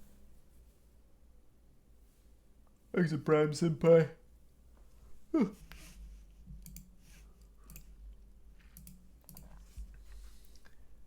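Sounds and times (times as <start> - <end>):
computer mouse and keyboard clicks: 6.5 - 10.7.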